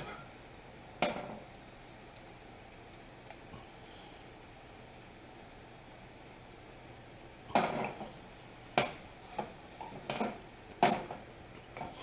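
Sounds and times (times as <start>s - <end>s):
frying pan and utensil clattering: 7.5s - 8.2s.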